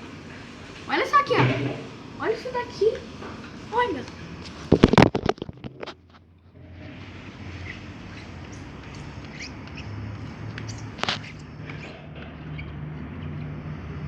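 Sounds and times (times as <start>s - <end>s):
slime squeaks: 6.9s - 12.8s.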